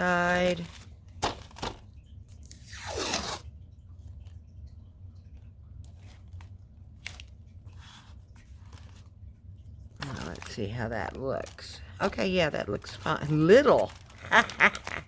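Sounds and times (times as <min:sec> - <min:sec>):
tape crinkling and tapping: 0:00.0 - 0:02.6, 0:03.5 - 0:15.0
tape ripping off roll: 0:02.5 - 0:03.5.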